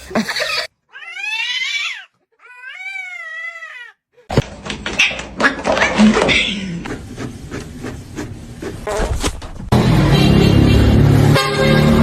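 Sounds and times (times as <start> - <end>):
cat meowing: 0.9 - 4.0
clattering and knocking: 4.3 - 6.5.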